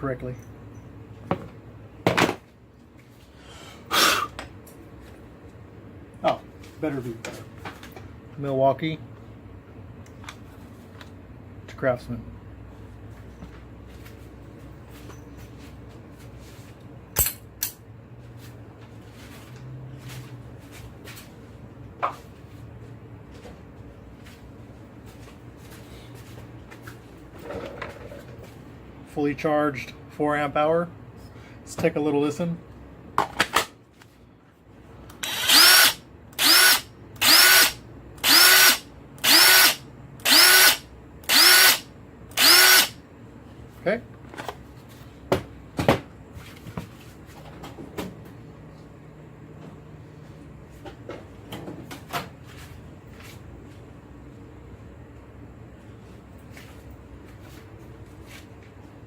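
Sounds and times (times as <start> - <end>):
power tool motor whirring: 35.2 - 43.0.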